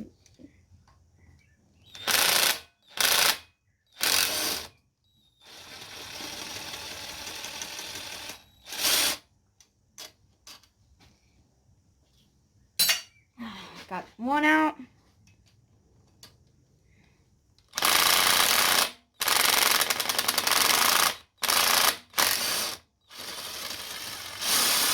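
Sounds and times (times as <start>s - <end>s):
air ratchet whirring: 17.7s - 24.9s.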